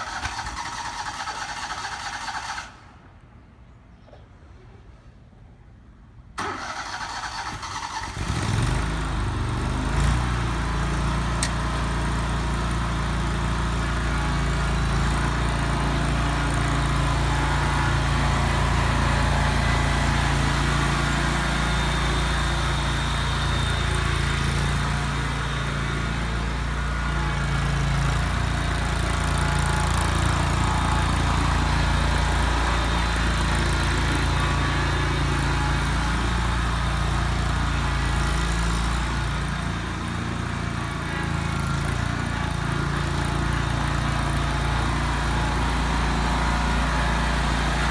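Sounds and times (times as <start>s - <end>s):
mower engine starting and running: 0.0s - 3.2s, 6.4s - 47.9s.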